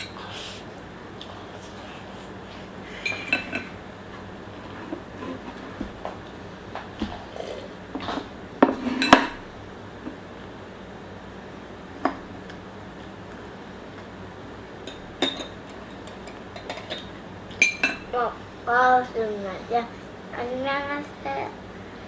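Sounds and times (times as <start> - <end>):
utensils clinking against a dish: 2.9 - 3.8, 8.0 - 9.4, 14.8 - 18.1.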